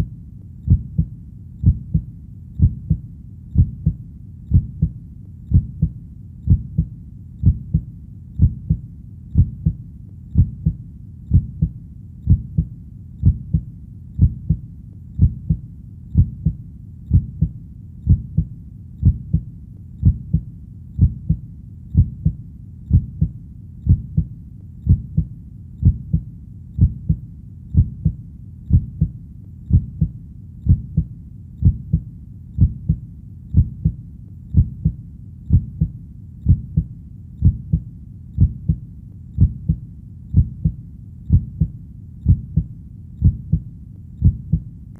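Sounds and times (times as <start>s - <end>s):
heartbeat double thump: 0.7s - 3.0s, 3.6s - 8.8s, 9.4s - 9.8s, 10.4s - 14.6s, 15.2s - 15.6s, 16.2s - 20.4s, 21.0s - 21.4s, 22.0s - 24.3s, 24.9s - 26.2s, 26.8s - 27.2s, 27.8s - 29.1s, 29.7s - 30.1s, 30.7s - 32.0s, 32.6s - 33.0s, 33.6s - 34.0s, 34.6s - 35.9s, 36.5s - 37.8s, 38.4s - 38.8s, 39.4s - 44.6s.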